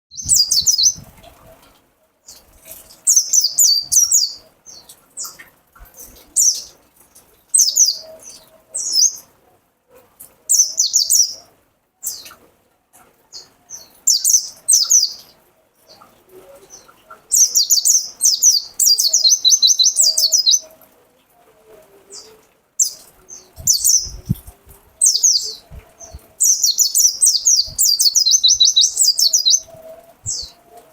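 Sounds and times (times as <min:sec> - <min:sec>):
bird twittering song: 0:00.1 - 0:01.3, 0:03.1 - 0:06.7, 0:10.5 - 0:12.4, 0:13.3 - 0:20.7, 0:22.1 - 0:30.7.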